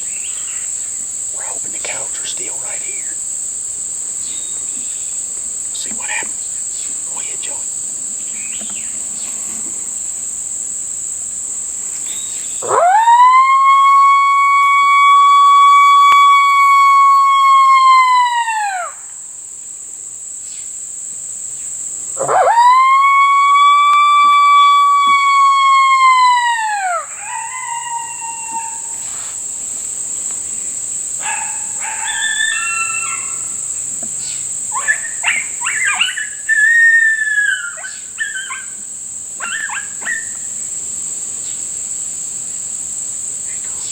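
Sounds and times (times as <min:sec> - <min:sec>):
insects droning: 0:00.0 - 0:43.9
coyote call howls: 0:12.6 - 0:19.1, 0:22.2 - 0:29.0, 0:31.2 - 0:33.6, 0:34.7 - 0:40.5
coyote call yips: 0:34.7 - 0:38.7, 0:39.4 - 0:40.4.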